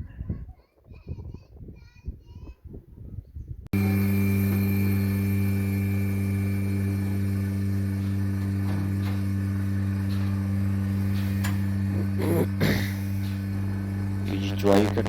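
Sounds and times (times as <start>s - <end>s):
low motor hum: 3.7s - 15.0s.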